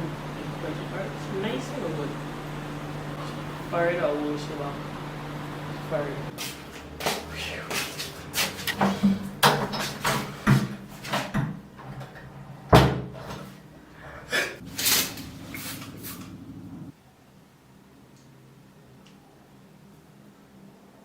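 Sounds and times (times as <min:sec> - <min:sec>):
sharp knocks and clatters: 0:08.4 - 0:13.4.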